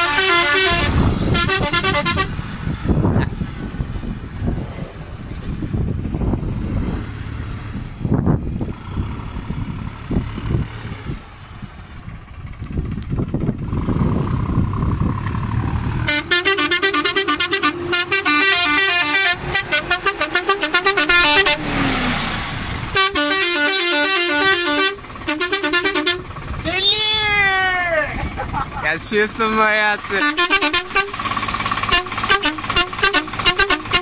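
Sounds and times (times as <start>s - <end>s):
musical air horn tune: 0.0s - 2.4s, 16.1s - 21.6s, 22.9s - 26.3s, 30.2s - 31.2s, 31.9s - 34.0s
low rumble: 0.8s - 16.1s.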